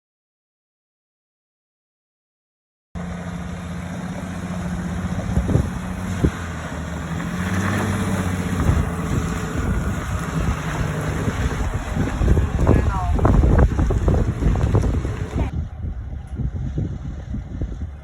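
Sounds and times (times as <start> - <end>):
diesel truck engine running: 3.0 - 18.0.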